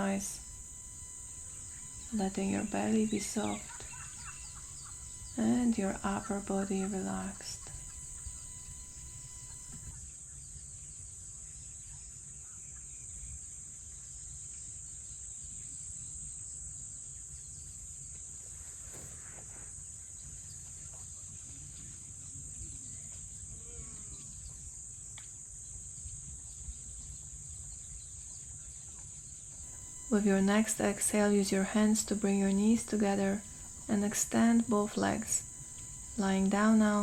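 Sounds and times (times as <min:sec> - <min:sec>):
faint bird calls: 0:00.0 - 0:09.9
crickets and insects chirping: 0:00.0 - 0:10.0, 0:29.6 - 0:37.0.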